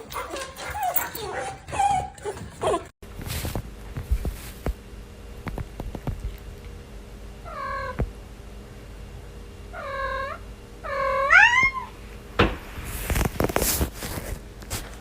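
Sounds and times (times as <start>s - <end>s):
cat meowing: 9.8s - 11.9s.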